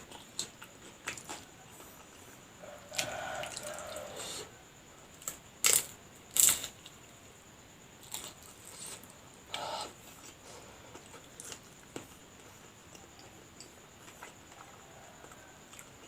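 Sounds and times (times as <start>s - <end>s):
crunching fried spring roll: 5.2s - 7.0s.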